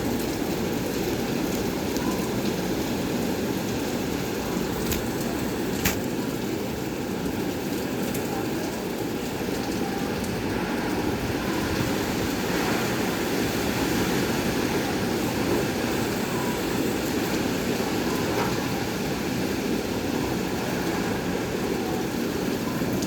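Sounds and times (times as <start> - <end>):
raindrops ticking on hard surface: 0.0 - 13.0
heavy rain pouring: 0.0 - 23.0.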